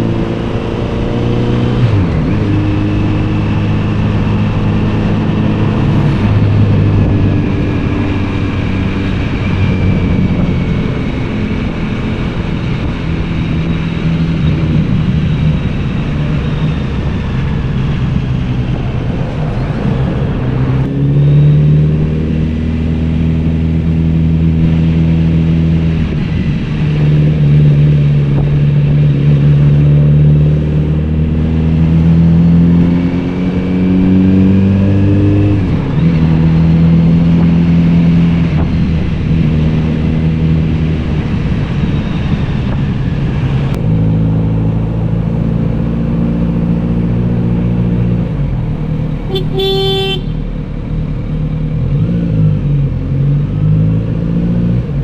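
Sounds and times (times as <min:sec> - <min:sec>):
motorcycle engine and exhaust: 0:00.0 - 0:55.0
horn toot: 0:49.3 - 0:50.5.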